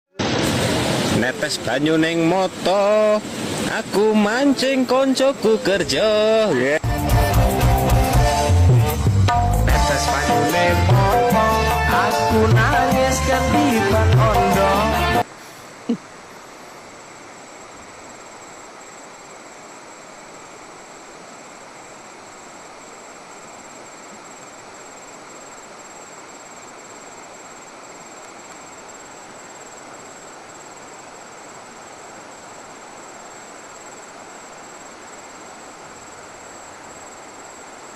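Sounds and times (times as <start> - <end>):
steady rushing noise: 0.1 - 6.8.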